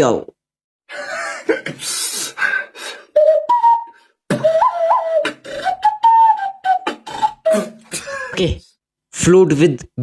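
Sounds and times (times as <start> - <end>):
whistle-like melody: 2.8 - 8.0
beatboxing: 4.3 - 8.0.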